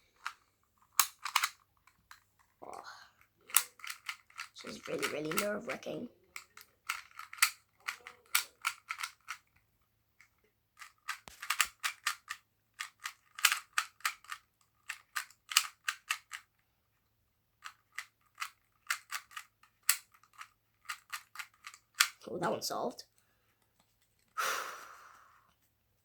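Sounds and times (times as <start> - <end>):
puzzle cube clicking: 0.1 - 2.2, 3.4 - 9.6, 10.8 - 16.5, 17.6 - 22.2.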